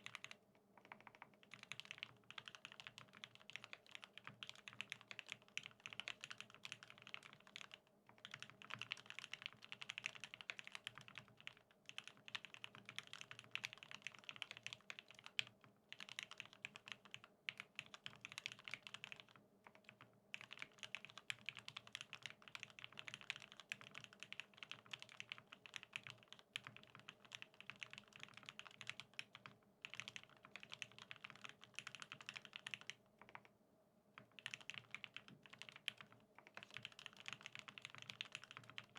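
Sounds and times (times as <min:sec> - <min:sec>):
mechanical keyboard typing: 0:00.0 - 0:33.5, 0:34.2 - 0:38.9.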